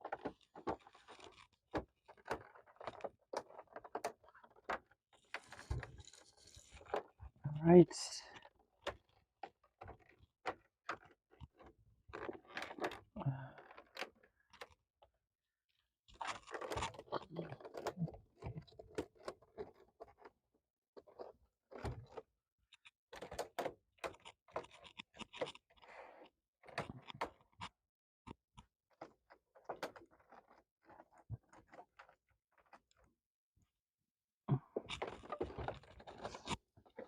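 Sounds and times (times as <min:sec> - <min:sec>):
plastic scraping: 0:16.1 - 0:20.4, 0:34.8 - 0:37.0.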